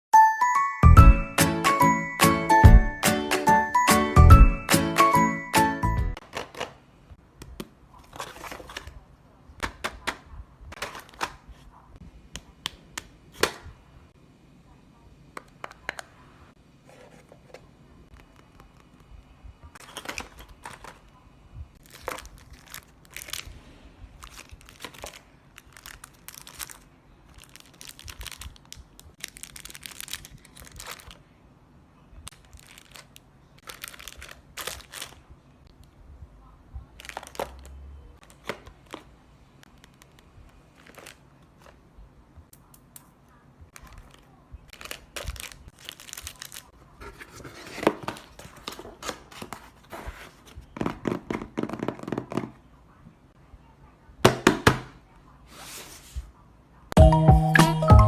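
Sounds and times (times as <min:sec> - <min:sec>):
paper crinkling and rustling: 0:07.9 - 0:09.0, 0:21.8 - 0:31.2, 0:32.3 - 0:35.3, 0:37.0 - 0:41.8, 0:43.8 - 0:50.7.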